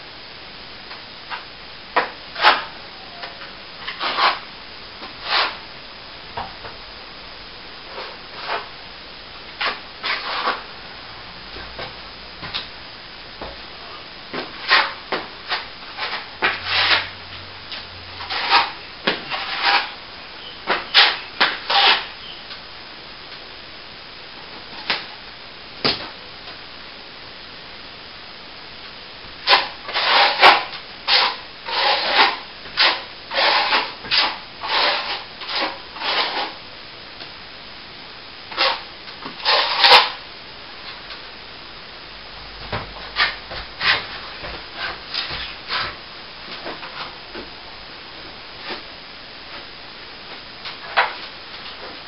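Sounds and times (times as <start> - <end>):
hand tool scraping plaster: 3.8 - 4.4, 5.2 - 5.6, 9.6 - 10.7, 14.4 - 17.1, 18.2 - 20.0, 20.7 - 22.1, 29.4 - 36.6, 38.5 - 40.2.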